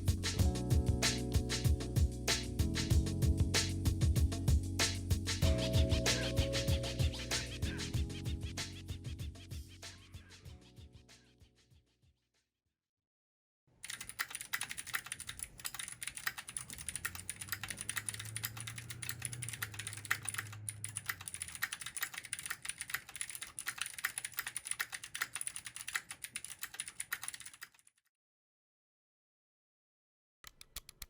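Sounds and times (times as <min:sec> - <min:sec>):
mechanical keyboard typing: 0:13.8 - 0:28.0, 0:30.4 - 0:31.0.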